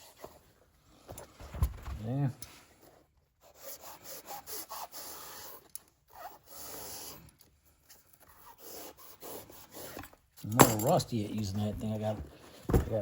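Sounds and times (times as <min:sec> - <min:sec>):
hand tool scraping upholstery: 0:03.4 - 0:10.3.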